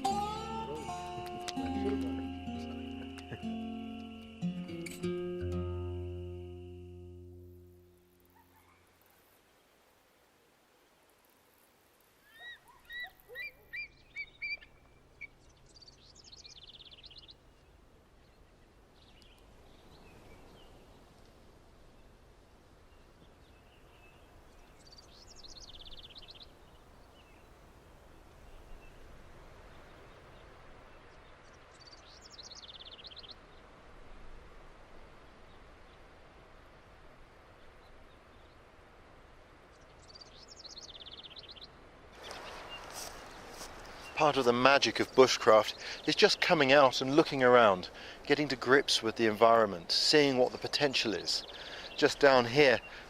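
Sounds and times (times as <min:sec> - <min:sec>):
high trilled birdsong: 0:00.0 - 0:07.3, 0:12.3 - 0:17.4
songbirds chirping: 0:00.0 - 0:10.0, 0:10.8 - 0:53.0
faint outdoor background: 0:00.0 - 0:53.0.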